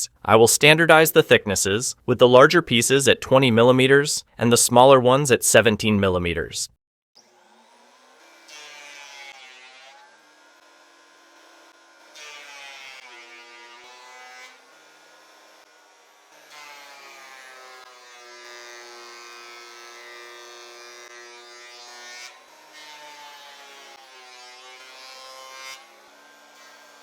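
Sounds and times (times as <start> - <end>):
thickness planer motor hum: 7.2 - 17.0
planer cutting boards: 7.2 - 27.0.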